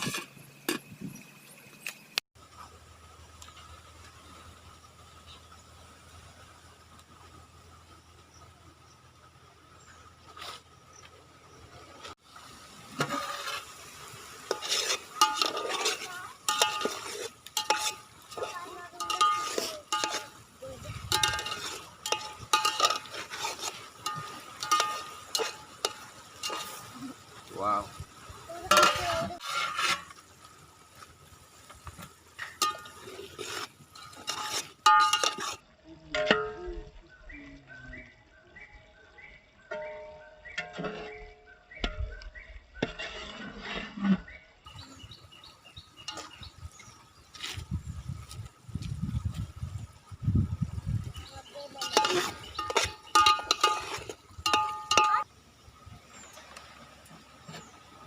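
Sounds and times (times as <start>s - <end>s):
metal utensil scraping a pan: 0.0s - 0.9s, 13.0s - 27.3s, 28.6s - 30.5s, 32.3s - 36.6s, 39.7s - 45.1s, 45.8s - 47.6s, 51.2s - 55.2s
food sizzling: 12.0s - 35.8s, 44.7s - 58.0s
ringing metal clanks: 51.8s - 55.2s.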